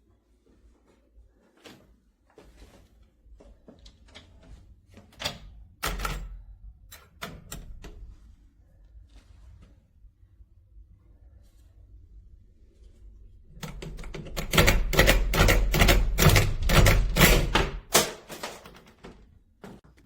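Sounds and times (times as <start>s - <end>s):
door latch clicks and knocks: 13.6s - 19.2s.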